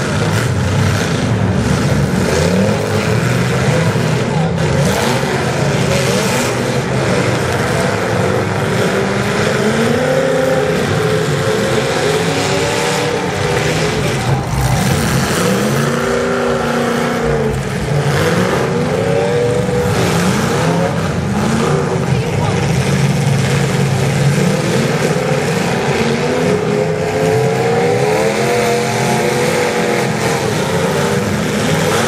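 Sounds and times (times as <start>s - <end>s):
car engines revving: 0.0s - 32.0s.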